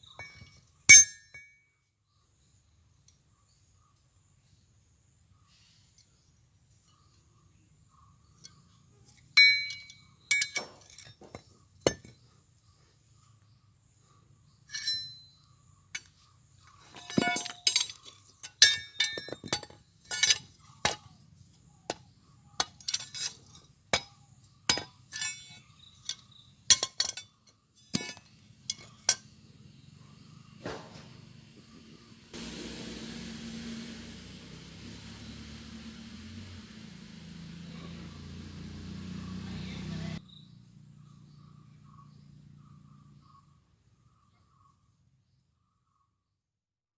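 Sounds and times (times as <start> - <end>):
hammer striking steel on anvil: 0.2 - 1.5, 9.4 - 10.8
steady hiss: 31.1 - 39.5.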